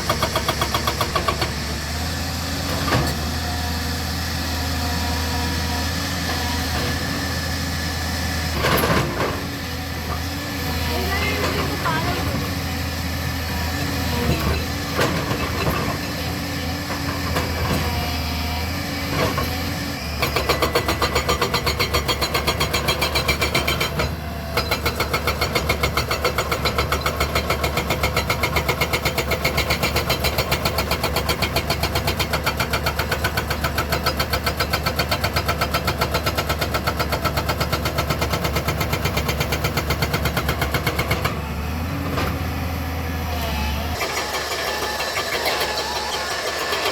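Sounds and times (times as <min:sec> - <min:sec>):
hydraulic breaker hammering rock: 0:00.0 - 0:01.6, 0:20.2 - 0:41.4, 0:44.0 - 0:46.9
excavator engine running: 0:00.0 - 0:46.9.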